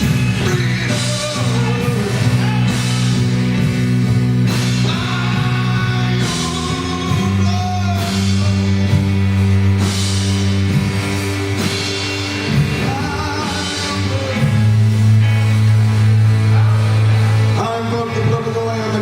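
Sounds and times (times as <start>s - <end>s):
person singing: 0.0s - 3.7s, 4.6s - 9.3s, 12.5s - 14.8s, 16.2s - 19.0s
held low chords: 0.0s - 19.0s.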